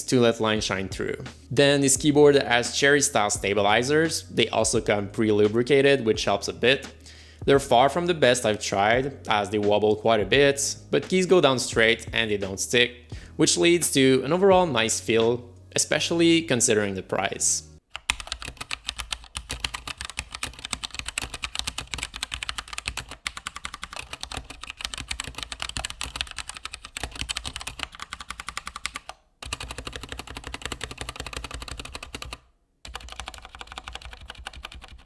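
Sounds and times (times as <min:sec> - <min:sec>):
fast mechanical keyboard typing: 0:18.0 - 0:35.0.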